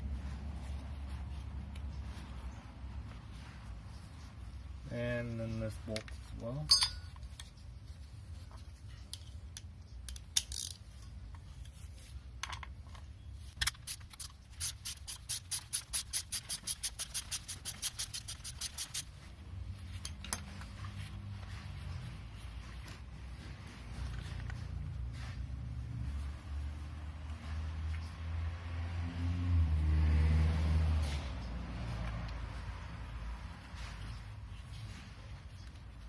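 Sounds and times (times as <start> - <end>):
ratchet wrench clicking: 10.1 - 10.8, 13.6 - 19.1.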